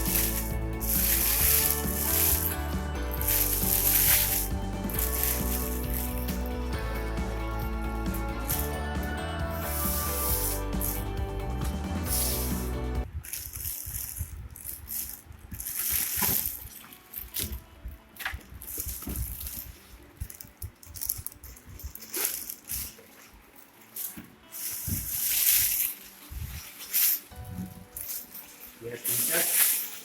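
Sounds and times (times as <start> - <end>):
plastic wrapping crinkling: 0.0 - 6.7, 12.1 - 30.0.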